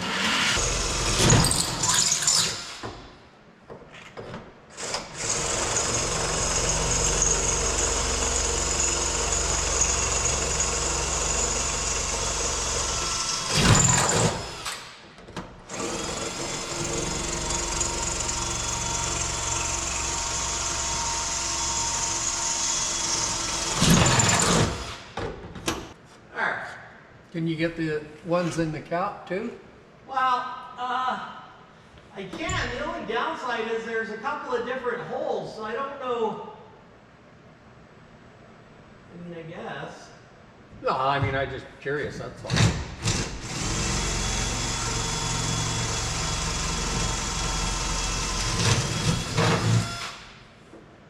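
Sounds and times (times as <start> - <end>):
power drill drilling metal: 0.0 - 2.9, 4.8 - 15.0, 15.7 - 25.1, 43.0 - 50.4.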